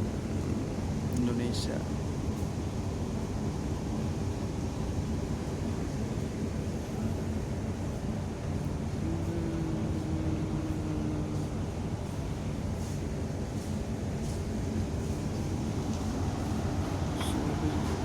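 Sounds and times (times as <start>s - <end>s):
ship engines droning: 0.0s - 18.0s.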